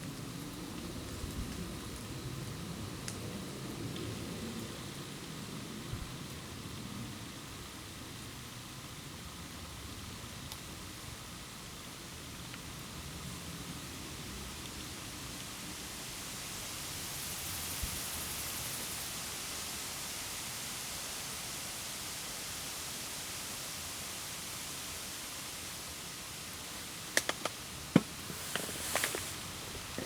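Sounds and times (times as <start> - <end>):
campfire hissing: 7.2 - 30.0
campfire wood popping: 27.0 - 30.0.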